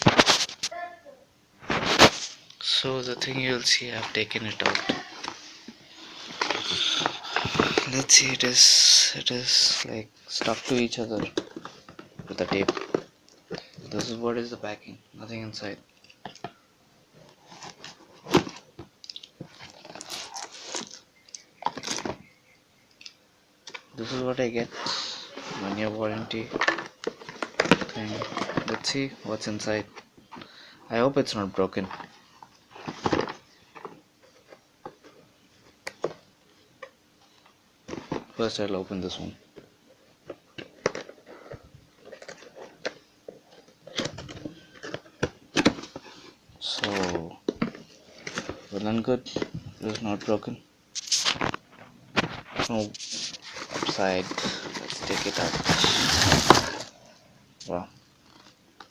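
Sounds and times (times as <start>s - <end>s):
packaging crinkling and rustling: 17.3s - 21.0s, 25.4s - 29.6s, 40.2s - 57.1s
packing material crinkling: 17.4s - 21.0s, 51.0s - 57.0s
cardboard packaging being handled: 19.4s - 21.0s, 24.0s - 29.6s, 40.2s - 57.0s.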